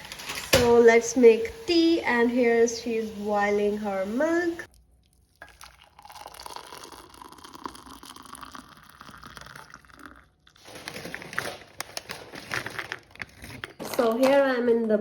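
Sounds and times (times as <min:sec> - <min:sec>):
milk boiling in a pan: 0:03.9 - 0:10.6.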